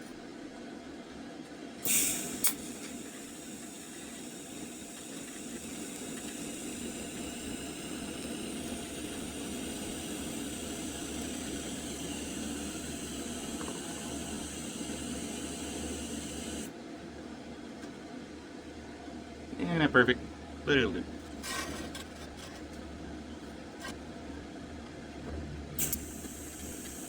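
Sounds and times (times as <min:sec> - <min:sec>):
short hissing burst: 0:01.8 - 0:16.7
welding arc crackling sizzle: 0:01.8 - 0:16.7, 0:25.8 - 0:27.0.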